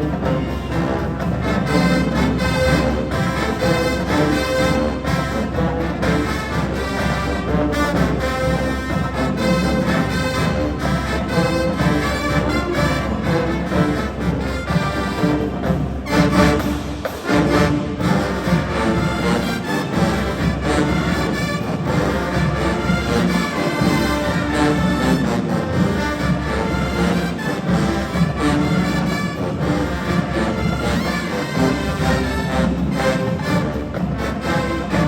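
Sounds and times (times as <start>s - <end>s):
marching band brass and drums: 0.0s - 35.0s.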